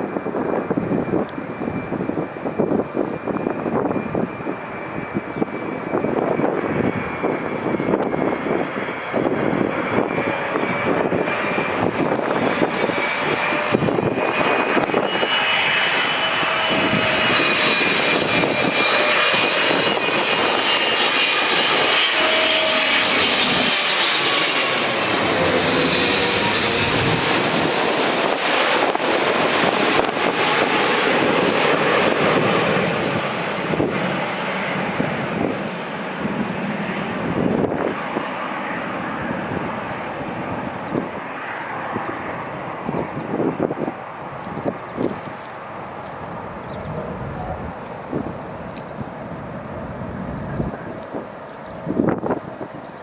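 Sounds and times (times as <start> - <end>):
jet rumble with high whine: 0.0 - 53.0.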